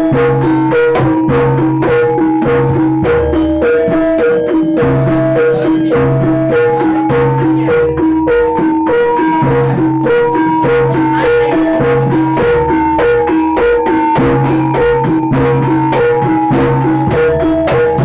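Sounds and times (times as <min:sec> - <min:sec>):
gamelan-style pitched percussion: 0:00.0 - 0:18.0
steady drumming: 0:00.0 - 0:18.0.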